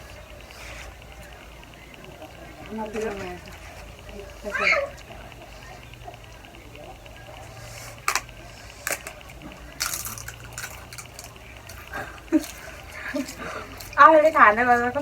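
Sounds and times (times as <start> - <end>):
sharp clicks: 0.0 - 13.0
wet chewing: 0.0 - 15.0.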